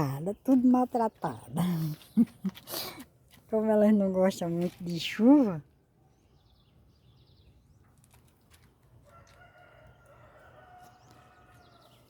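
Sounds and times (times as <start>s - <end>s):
rooster crowing: 9.0s - 12.0s.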